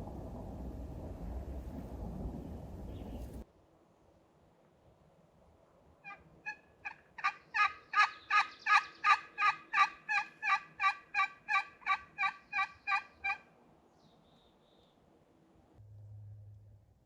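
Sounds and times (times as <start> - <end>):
turkey box call yelps: 6.0 - 13.4.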